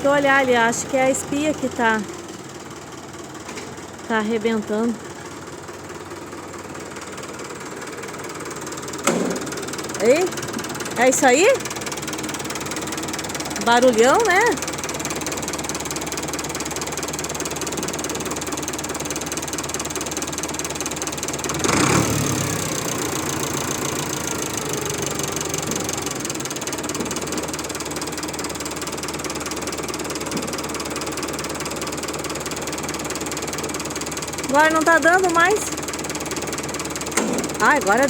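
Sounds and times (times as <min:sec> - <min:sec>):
tractor diesel engine running: 0:00.0 - 0:38.0
loud mechanical bang: 0:09.0 - 0:09.5, 0:37.1 - 0:37.6.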